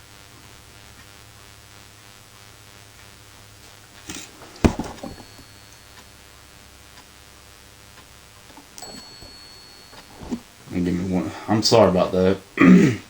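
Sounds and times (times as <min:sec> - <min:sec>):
low room hum: 0:00.0 - 0:13.0
sharp knocks: 0:04.1 - 0:05.4.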